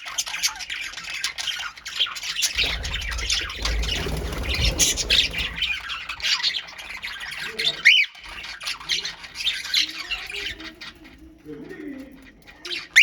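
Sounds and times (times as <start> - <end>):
birds calling and squawking: 0.0 - 13.0
low rumble: 2.6 - 6.3.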